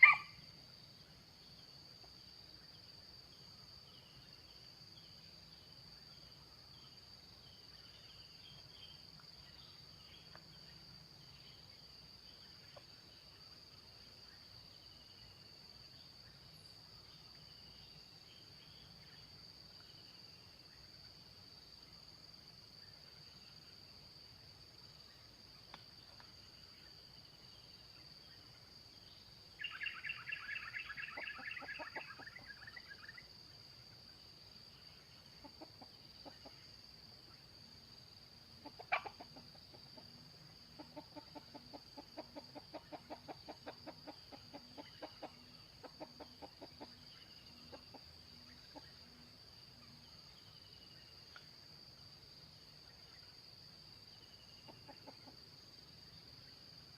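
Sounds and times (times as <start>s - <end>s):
junglefowl clucking: 0.0s - 0.3s, 30.3s - 32.8s, 38.6s - 40.0s, 40.8s - 47.0s
high insect drone: 0.0s - 56.9s.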